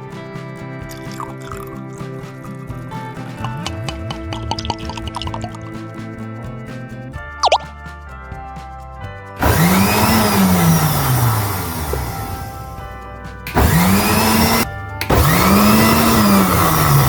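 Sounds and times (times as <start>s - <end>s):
background music: 0.0s - 17.0s
blender running: 9.4s - 12.7s, 13.5s - 17.0s.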